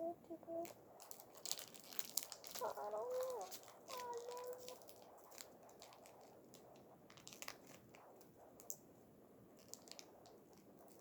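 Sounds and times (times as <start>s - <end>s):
small clicks and crackles: 0.2s - 11.0s
plastic packaging crinkling: 1.0s - 6.3s.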